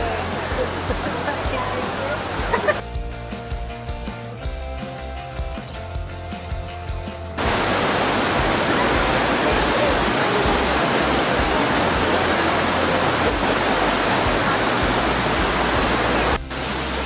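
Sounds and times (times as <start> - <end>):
waterfall rushing: 0.0 - 2.8, 7.4 - 17.0.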